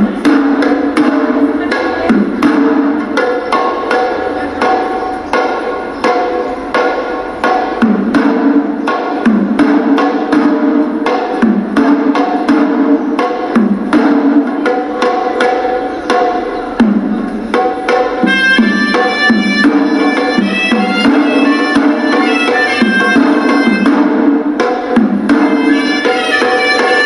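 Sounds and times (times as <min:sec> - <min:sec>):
reedy shawm melody: 0:00.0 - 0:27.0
ritual drums beating fast rhythm: 0:00.0 - 0:27.0.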